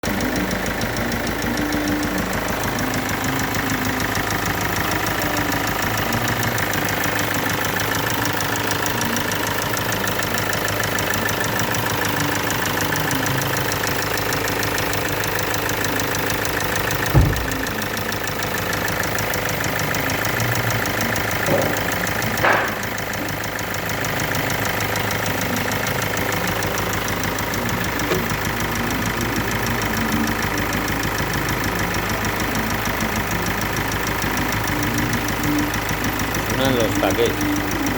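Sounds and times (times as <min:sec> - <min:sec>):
diesel engine idling: 0:00.0 - 0:37.9
fast engine tappet ticking: 0:00.0 - 0:37.9
engine thumps and knocks: 0:01.4 - 0:28.7.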